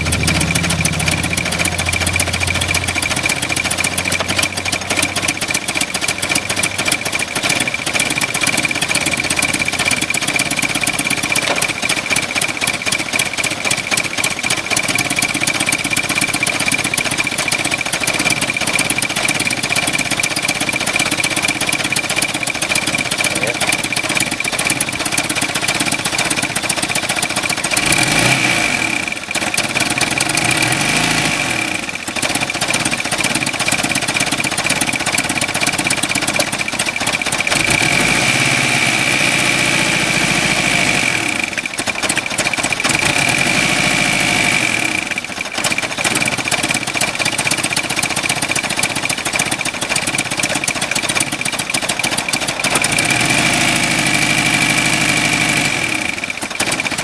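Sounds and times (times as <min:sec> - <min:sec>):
high engine whine: 0:00.0 - 0:12.5
car engine knocking: 0:00.0 - 0:57.0.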